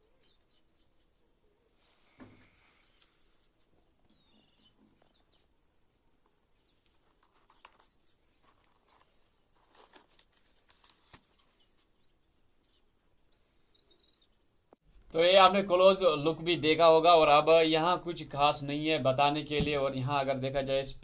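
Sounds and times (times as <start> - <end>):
bird chirp: 0.0 - 14.8.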